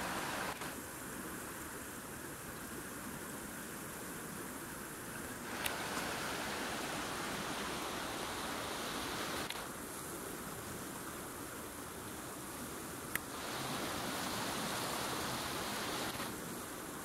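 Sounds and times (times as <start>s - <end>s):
floodwater rushing: 0.0s - 0.8s, 4.9s - 17.0s
small clicks: 9.4s - 9.7s.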